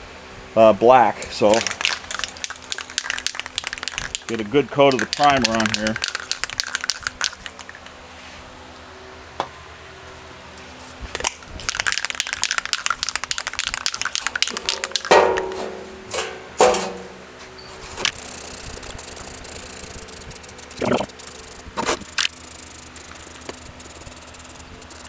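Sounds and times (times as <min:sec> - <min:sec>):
spray can hissing: 0:01.2 - 0:07.9, 0:11.1 - 0:15.2, 0:17.9 - 0:25.0
spray can ball rattling: 0:01.2 - 0:08.0, 0:11.1 - 0:17.0, 0:17.8 - 0:25.0
sharp clatters: 0:01.3 - 0:08.0, 0:11.1 - 0:17.2, 0:17.8 - 0:25.0.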